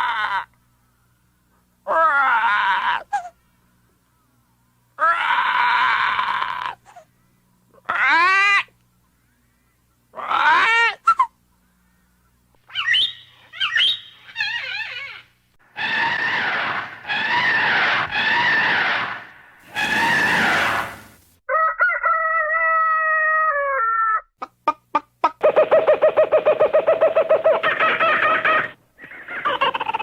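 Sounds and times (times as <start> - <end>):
squawking animal-like calls: 12.6 - 21.1.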